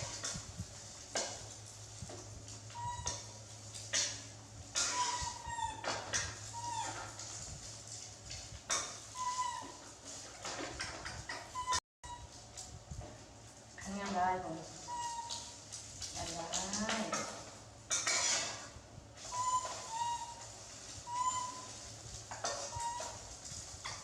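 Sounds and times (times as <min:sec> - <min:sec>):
small animal squeaking: 0:04.8 - 0:05.8, 0:09.2 - 0:09.8, 0:14.9 - 0:15.6, 0:19.3 - 0:21.8, 0:22.4 - 0:23.3
sharp clicks and crackling: 0:15.3 - 0:18.1.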